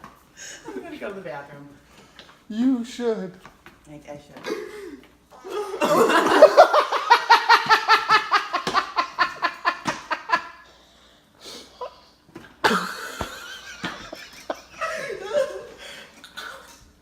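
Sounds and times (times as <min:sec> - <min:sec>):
person laughing hard: 0:05.4 - 0:10.6, 0:12.6 - 0:16.8.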